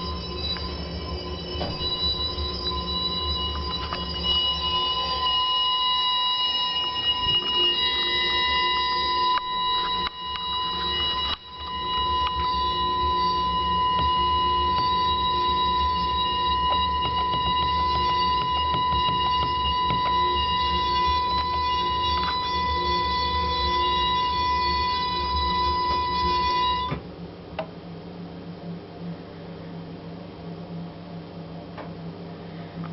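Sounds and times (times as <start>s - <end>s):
boiler whistling: 0.0s - 27.0s
low hum: 0.0s - 32.9s.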